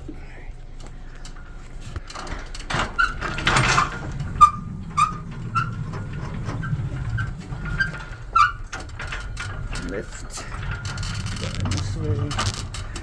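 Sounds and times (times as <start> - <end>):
wheeled lift rumbling across floor: 2.0 - 13.0
wheel squeaks: 2.7 - 13.0.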